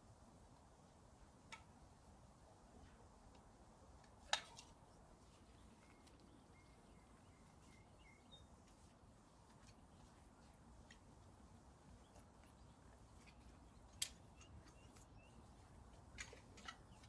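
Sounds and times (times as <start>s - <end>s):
faint outdoor hiss: 0.0s - 17.0s
faint high chirps: 5.5s - 8.5s.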